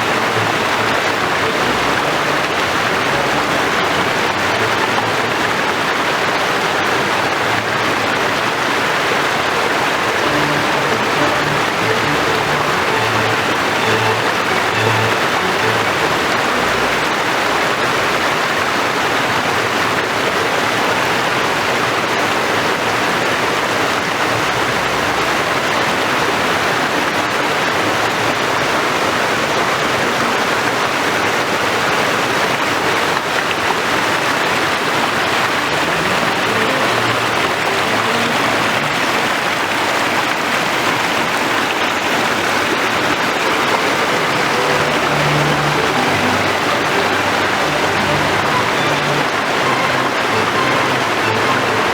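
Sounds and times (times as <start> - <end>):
waterfall rushing: 0.0 - 51.9.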